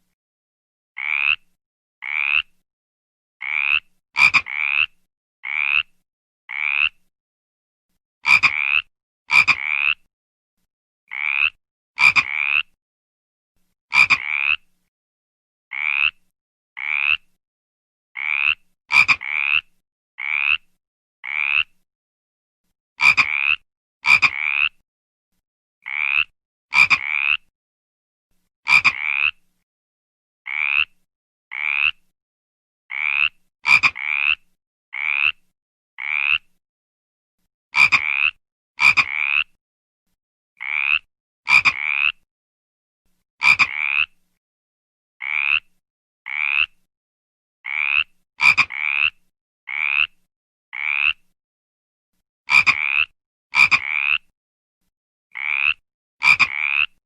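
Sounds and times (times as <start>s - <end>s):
frog croaking: 1.0s - 2.5s, 3.4s - 5.9s, 6.5s - 7.0s, 8.3s - 10.1s, 11.1s - 12.8s, 13.9s - 14.7s, 15.7s - 16.2s, 16.8s - 17.3s, 18.2s - 21.8s, 23.0s - 24.8s, 25.8s - 27.5s, 28.7s - 29.4s, 30.5s - 32.0s, 32.9s - 34.4s, 35.0s - 35.4s, 36.0s - 36.5s, 37.8s - 39.5s, 40.6s - 42.2s, 43.4s - 44.1s, 45.2s - 45.7s, 46.3s - 46.8s, 47.7s - 50.2s, 50.8s - 51.2s, 52.5s - 54.2s, 55.3s - 57.0s.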